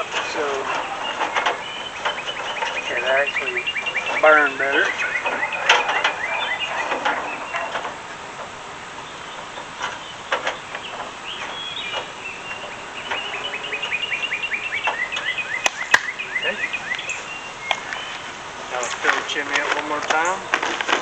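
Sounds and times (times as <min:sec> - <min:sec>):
bird chirping: 0:00.0 - 0:20.7
charcoal briquettes clicking: 0:14.8 - 0:16.1, 0:18.7 - 0:21.0.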